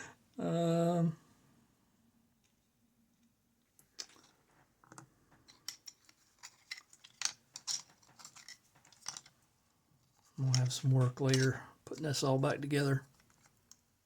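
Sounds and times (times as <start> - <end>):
lock parts clicking and tapping: 3.8 - 9.4, 10.4 - 12.2.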